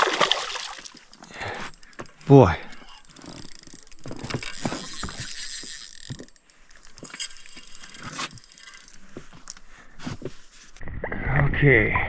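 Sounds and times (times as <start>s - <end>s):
fishing reel ratcheting: 0.2s - 9.7s.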